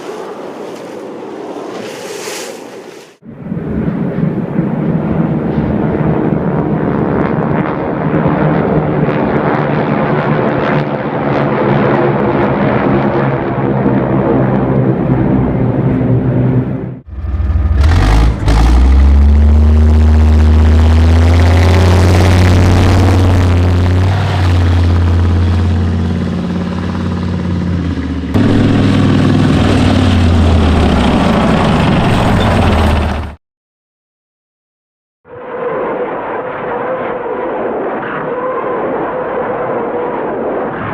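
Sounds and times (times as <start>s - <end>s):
aircraft engines droning: 0.0s - 33.4s
tank engine running heavily: 15.2s - 33.4s.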